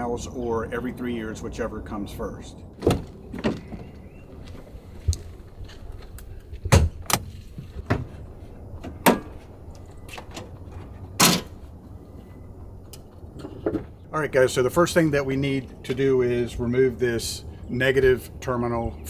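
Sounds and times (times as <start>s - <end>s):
low steady rumble: 0.0s - 19.0s
clunk: 8.8s - 11.6s, 12.9s - 14.0s.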